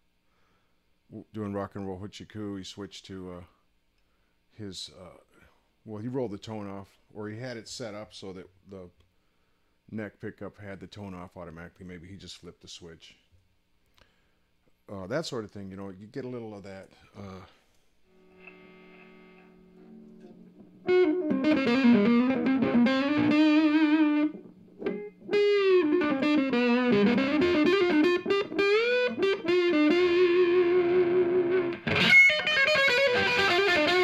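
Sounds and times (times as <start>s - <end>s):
distorted electric guitar lead: 18.1s - 34.0s
guitar chord ringing: 18.1s - 34.0s.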